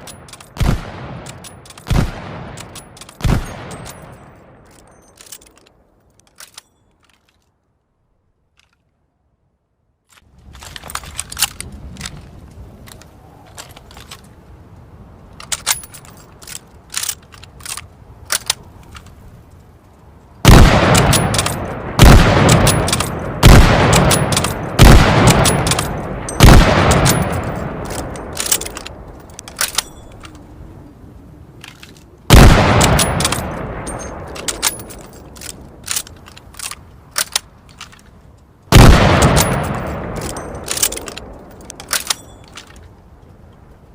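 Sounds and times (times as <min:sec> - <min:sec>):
rifle shots echoing: 0:00.3 - 0:04.5, 0:20.4 - 0:30.0, 0:32.3 - 0:36.0, 0:38.7 - 0:42.4
rifle bolt clicks: 0:15.4 - 0:19.6, 0:20.5 - 0:30.4, 0:31.6 - 0:42.9.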